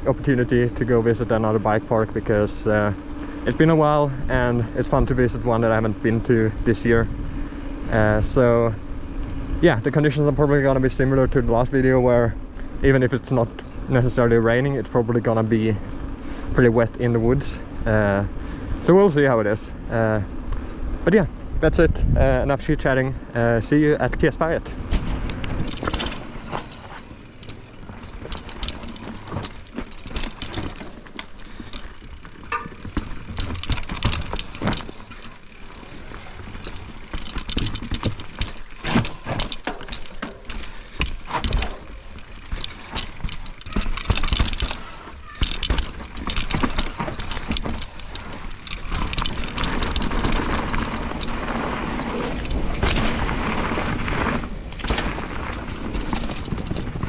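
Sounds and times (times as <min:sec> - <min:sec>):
bike knocking and rattling: 0:00.0 - 0:12.8, 0:24.2 - 0:57.0
bike tyres rolling on dirt: 0:00.0 - 0:21.6, 0:22.6 - 0:57.0.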